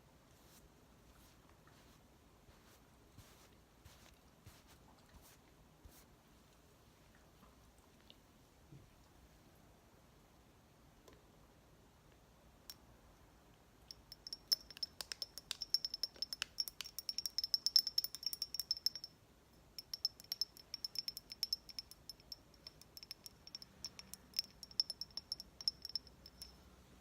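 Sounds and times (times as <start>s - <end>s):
makeup items tapping and clicking: 13.9s - 19.1s, 19.8s - 26.5s
faint high ringing: 13.9s - 27.0s.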